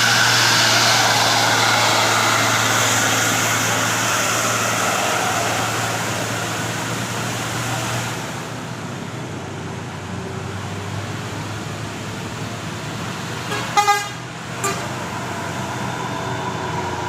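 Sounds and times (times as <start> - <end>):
bus passing roar: 0.0 - 17.0
road hum: 0.0 - 17.0.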